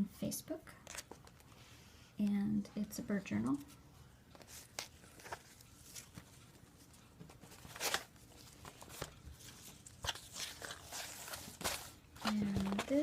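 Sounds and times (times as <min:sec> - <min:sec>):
paper rustling and crinkling: 0:03.5 - 0:13.0.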